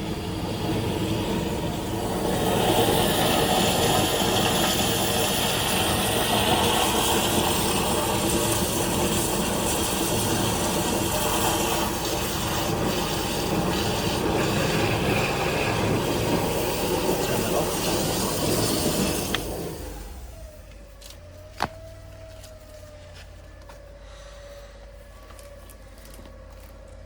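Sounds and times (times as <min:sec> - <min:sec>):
water hissing through hose: 0:00.0 - 0:20.5
pump engine humming: 0:00.0 - 0:27.0.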